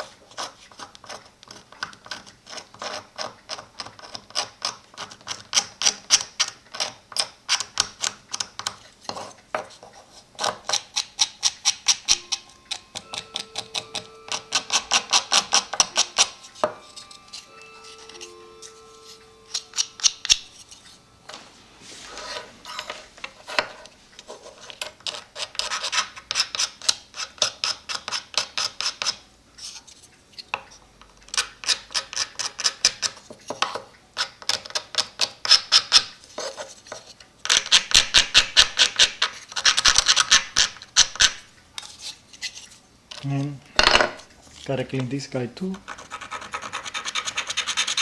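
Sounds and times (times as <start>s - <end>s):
knife scraping paper and glue: 21.9s - 30.0s.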